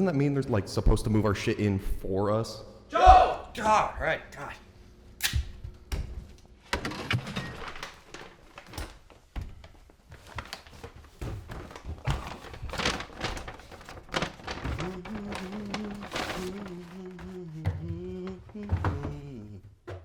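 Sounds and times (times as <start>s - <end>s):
household items knocking and clattering: 5.9s - 20.0s.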